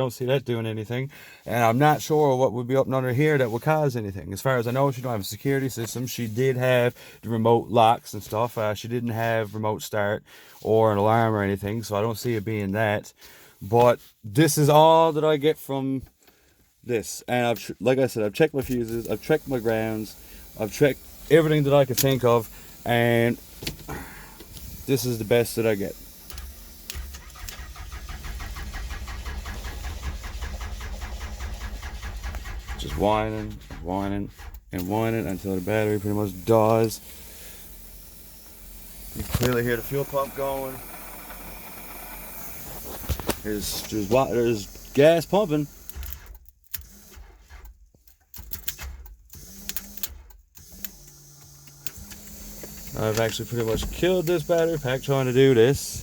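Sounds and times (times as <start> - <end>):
car engine cranking on starter: 18.4 - 56.0
electric fuel pump whirring: 18.6 - 56.0.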